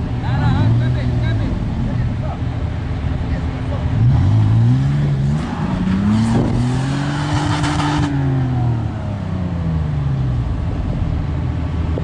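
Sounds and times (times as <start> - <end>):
engine revving hard: 3.9 - 8.9.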